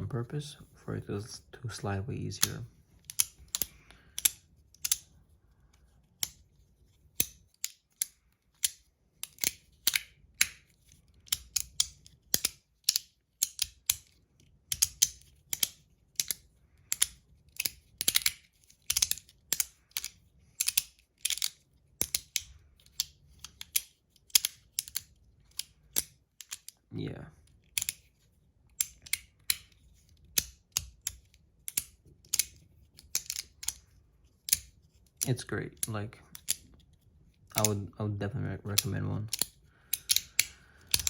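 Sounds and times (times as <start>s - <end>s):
slider fidget clicking: 38.7s - 41.0s.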